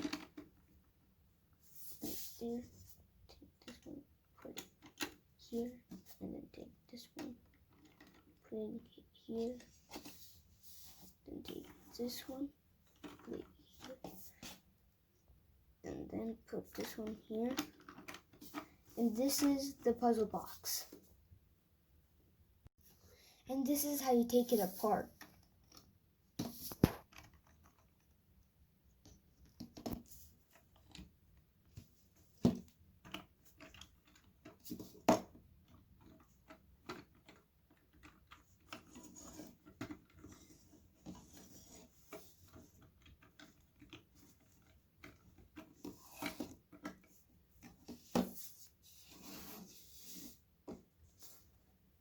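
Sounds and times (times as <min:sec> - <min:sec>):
plastic pieces rubbing and sliding: 0:33.0 - 0:51.7.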